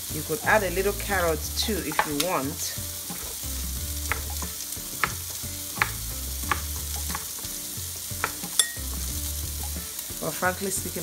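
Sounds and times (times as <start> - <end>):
food sizzling in a frying pan: 0.0 - 11.0
utensil clicking against pan: 1.8 - 2.3, 8.2 - 8.8.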